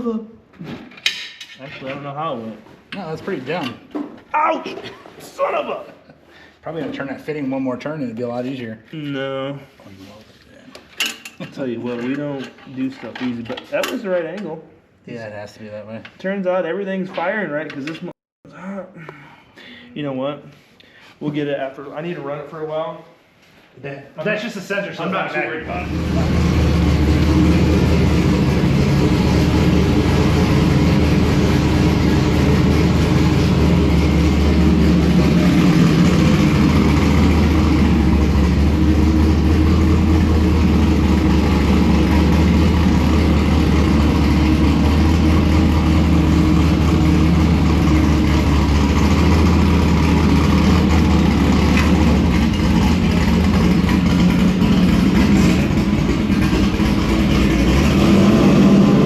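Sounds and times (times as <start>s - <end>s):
car engine idling: 25.6s - 59.0s.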